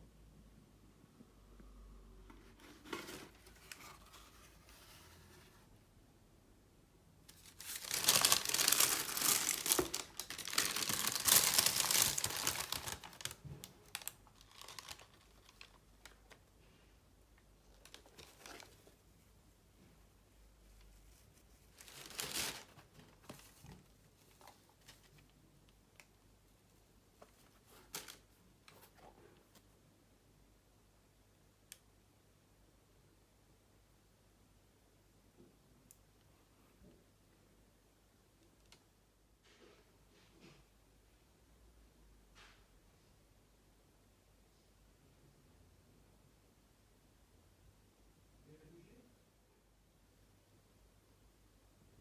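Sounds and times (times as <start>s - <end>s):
packaging tearing and rustling: 7.3s - 16.3s, 21.8s - 23.6s.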